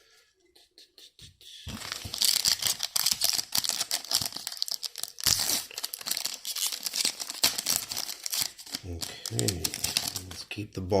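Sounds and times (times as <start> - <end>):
foil wrapper crinkling and tearing: 1.7 - 10.5.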